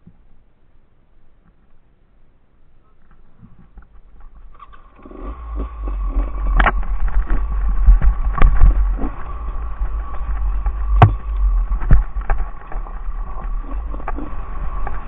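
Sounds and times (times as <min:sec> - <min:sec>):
motorcycle engine rumbling: 0:03.0 - 0:15.0
sharp knocks: 0:10.8 - 0:12.4.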